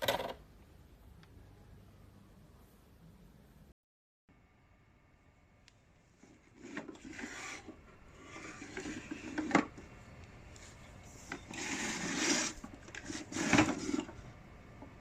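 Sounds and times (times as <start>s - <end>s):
plastic rubbing and rustling: 6.2s - 9.8s, 10.6s - 14.2s.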